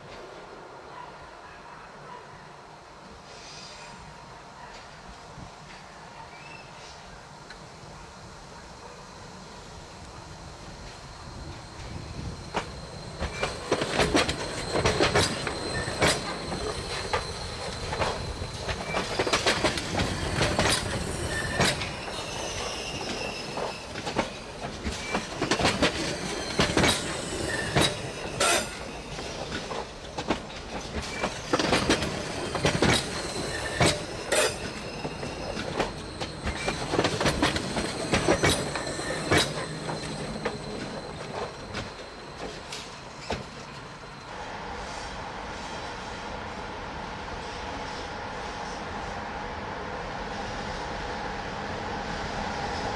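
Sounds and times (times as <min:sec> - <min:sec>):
freight train rolling rumble: 0:04.0 - 0:52.9
thin wheel squeal: 0:11.5 - 0:30.0, 0:31.1 - 0:43.6.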